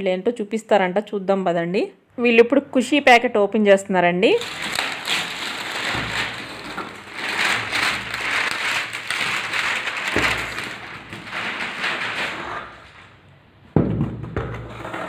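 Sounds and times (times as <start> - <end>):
packaging tearing and crinkling: 4.4 - 13.2.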